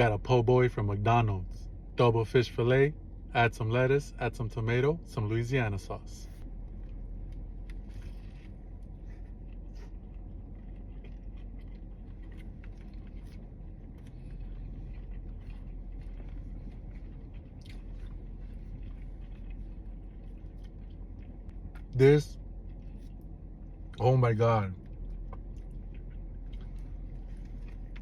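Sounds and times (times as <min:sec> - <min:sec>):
low hum: 0:00.0 - 0:28.0
person chewing a sandwich: 0:06.3 - 0:28.0
small crunches: 0:06.6 - 0:21.9.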